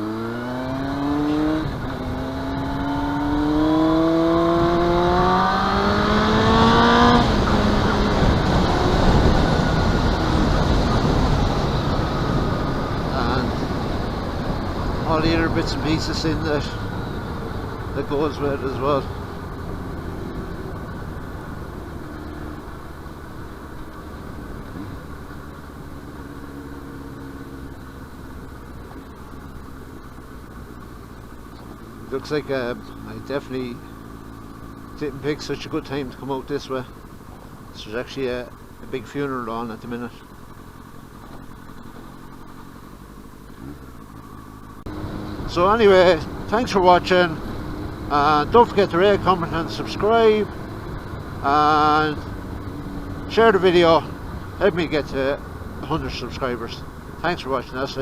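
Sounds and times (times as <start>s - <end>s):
motorcycle engine revving hard: 0.0s - 22.7s, 44.6s - 58.0s
wind and road rush: 0.0s - 58.0s
motorcycle engine idling: 7.4s - 58.0s.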